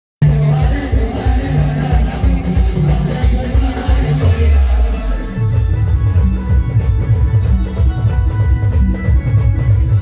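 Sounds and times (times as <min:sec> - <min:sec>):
heavy bass line: 0:00.2 - 0:07.2
loud amplified band music: 0:00.2 - 0:10.0
steady drum beat: 0:00.2 - 0:10.0.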